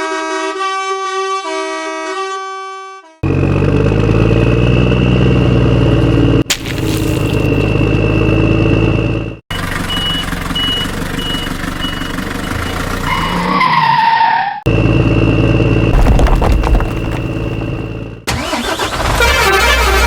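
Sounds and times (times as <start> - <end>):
vehicle engine running: 3.2 - 13.4, 14.7 - 20.0.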